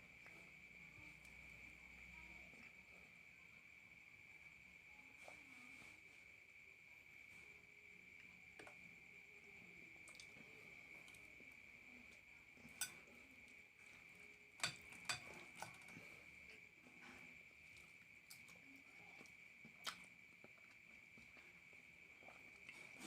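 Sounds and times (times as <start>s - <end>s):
eating clicks and smacks: 10.0s - 10.4s, 17.8s - 21.4s.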